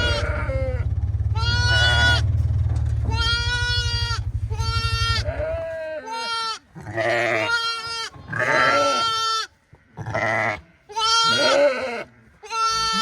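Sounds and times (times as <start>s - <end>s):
sheep bleating: 0.0s - 2.3s, 3.0s - 13.0s.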